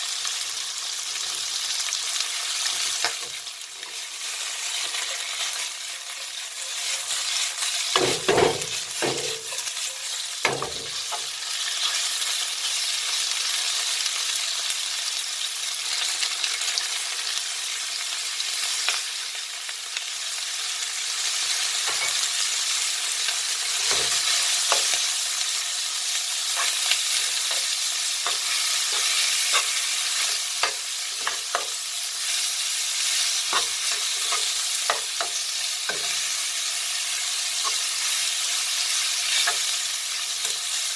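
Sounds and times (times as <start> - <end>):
food sizzling in a frying pan: 0.0 - 40.9
utensil knocking against pan: 8.0 - 9.4.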